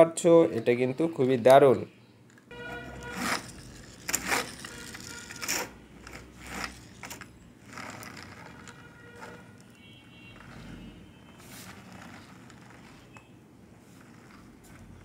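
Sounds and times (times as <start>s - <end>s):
plastic toy clicks and knocks: 3.0s - 8.8s.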